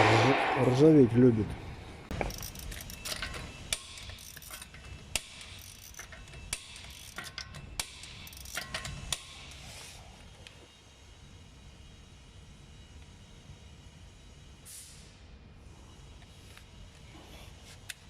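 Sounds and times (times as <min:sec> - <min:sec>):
ratchet wrench clicking: 0:02.1 - 0:09.7.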